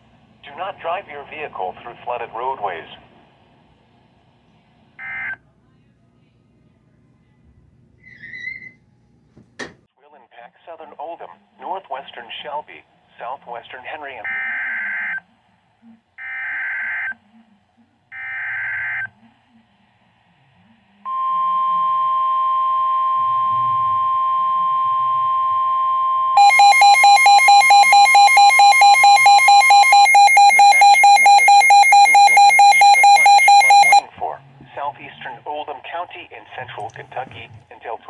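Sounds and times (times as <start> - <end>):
steady alert tone: 26.4 - 34.0.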